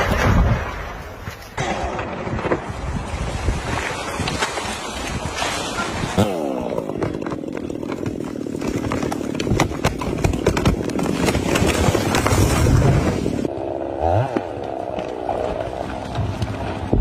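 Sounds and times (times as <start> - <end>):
chainsaw engine revving: 6.1 - 7.7, 13.4 - 15.4.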